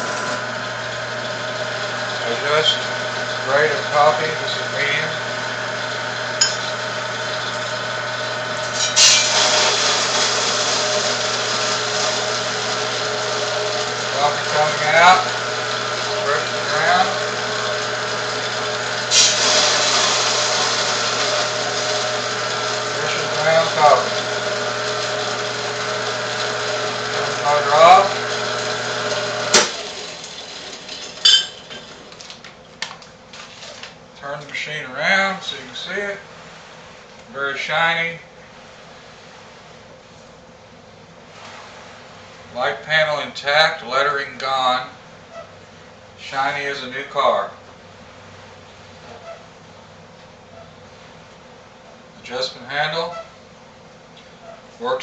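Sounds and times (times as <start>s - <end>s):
coffee beans grinding: 0.0s - 32.3s
coffee grinder motor humming: 0.0s - 32.4s
metallic clink: 6.4s - 6.7s.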